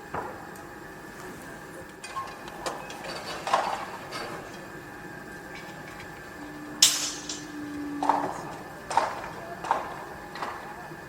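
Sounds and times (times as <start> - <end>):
steady machine hum: 0.0 - 11.0
metal clanks and knocks: 6.8 - 10.6.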